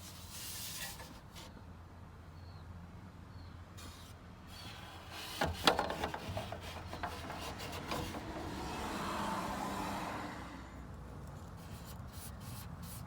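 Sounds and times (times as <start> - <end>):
plastic scraping against plastic: 3.8 - 9.1
plastic clicks and knocks: 5.1 - 8.7.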